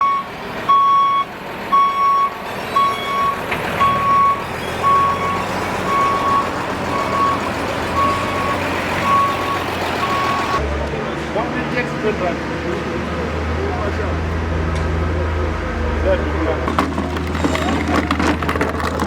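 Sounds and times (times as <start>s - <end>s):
reversing alarm beeping: 0.0s - 10.6s
site machinery noise: 0.1s - 19.0s.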